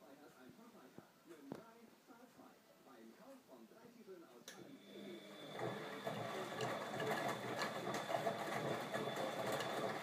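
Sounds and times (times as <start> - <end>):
washing machine running: 4.7 - 10.0.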